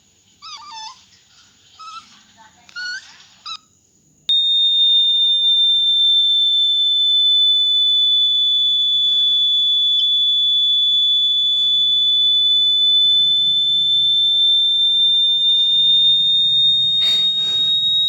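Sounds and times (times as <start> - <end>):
high-pitched electronic tone: 11.5 - 18.0.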